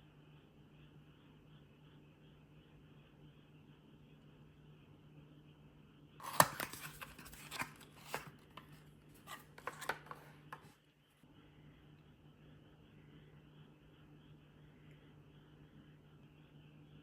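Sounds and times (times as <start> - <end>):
packaging crackling and rustling: 6.2 - 10.7.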